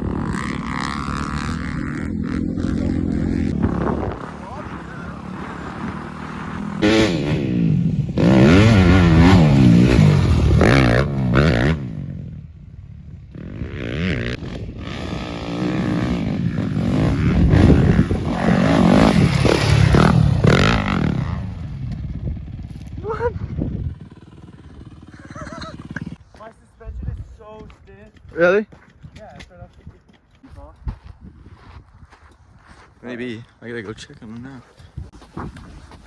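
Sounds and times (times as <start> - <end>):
dirt bike engine revving: 0.0 - 26.2.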